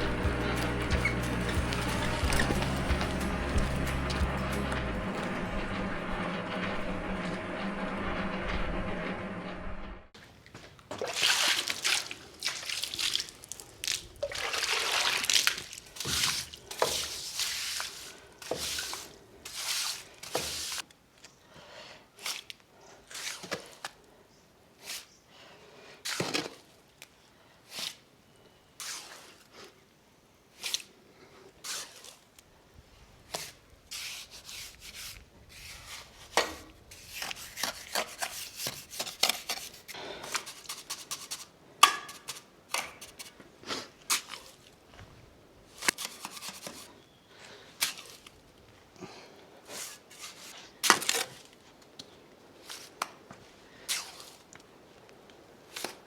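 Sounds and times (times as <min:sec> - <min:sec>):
trowel scraping wet cement: 0:15.4 - 0:20.8, 0:22.2 - 0:23.9, 0:26.0 - 0:26.7, 0:28.8 - 0:29.6, 0:31.6 - 0:32.4, 0:33.3 - 0:44.7, 0:45.8 - 0:47.0, 0:49.6 - 0:51.5, 0:53.8 - 0:54.5.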